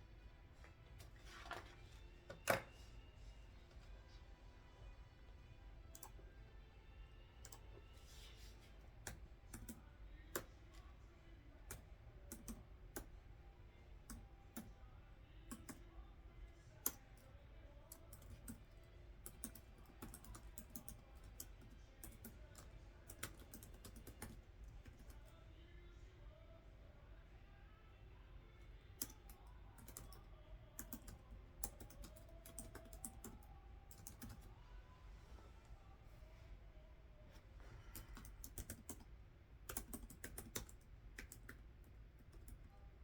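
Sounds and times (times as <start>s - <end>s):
typing on computer keyboard: 9.0s - 10.8s, 11.7s - 13.1s, 15.5s - 15.8s, 17.9s - 25.2s, 29.0s - 34.5s, 37.9s - 39.1s, 39.7s - 42.7s.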